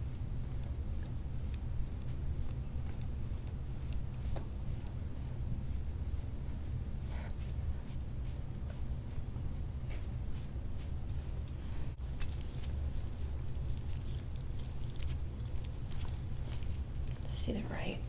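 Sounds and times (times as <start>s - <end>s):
rubbing strokes on skin: 0.0s - 18.0s
steady low hum: 0.0s - 18.0s.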